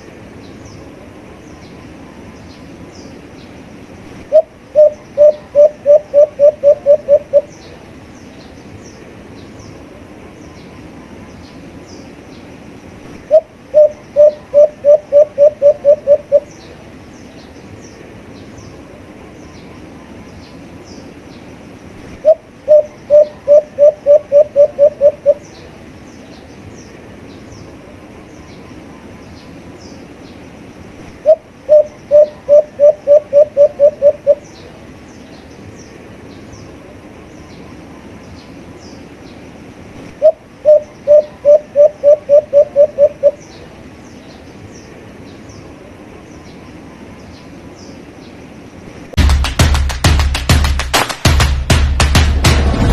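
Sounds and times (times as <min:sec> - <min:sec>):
small birds chirping: 0:00.0 - 0:49.1
steady background hiss: 0:00.0 - 0:52.9
dove cooing: 0:04.3 - 0:07.6, 0:13.2 - 0:16.5, 0:22.2 - 0:25.5, 0:31.2 - 0:34.5, 0:40.2 - 0:43.4.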